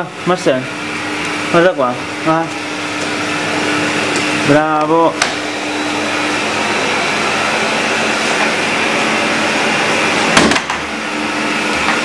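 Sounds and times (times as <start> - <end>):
vacuum cleaner running: 0.0 - 12.0
sharp knock: 10.4 - 10.8.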